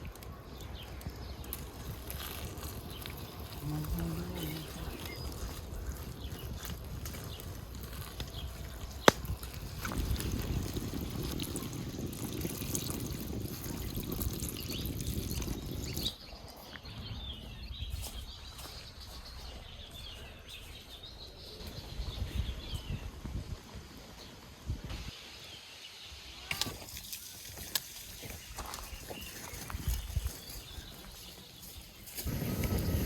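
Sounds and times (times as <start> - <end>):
small birds chirping: 0.0 - 24.4, 25.3 - 33.0
water trickling: 10.2 - 16.0.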